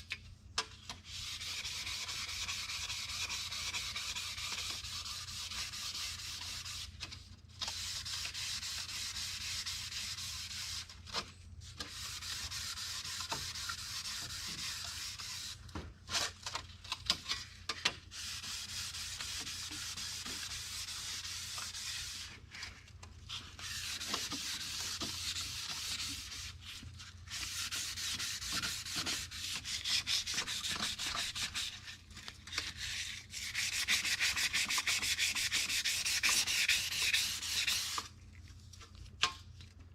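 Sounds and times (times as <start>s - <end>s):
sandpaper rubbing on metal: 1.1s - 6.9s, 11.8s - 15.6s, 18.1s - 22.4s, 23.3s - 32.0s, 32.6s - 38.0s.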